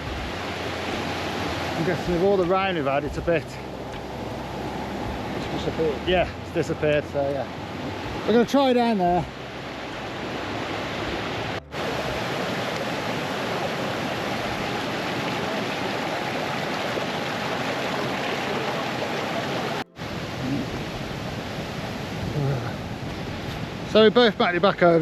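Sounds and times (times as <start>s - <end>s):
stream rushing: 0.0s - 25.0s.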